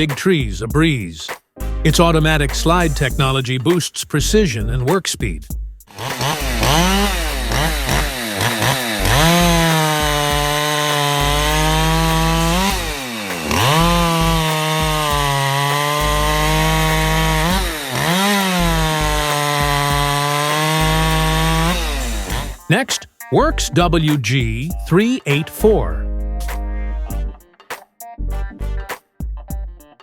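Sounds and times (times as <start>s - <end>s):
chainsaw cutting: 5.9s - 22.7s.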